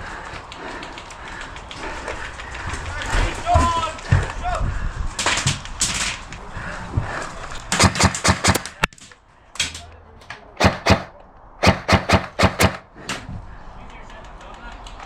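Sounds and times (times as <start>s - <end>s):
airsoft guns firing: 7.7s - 10.0s, 10.6s - 13.3s.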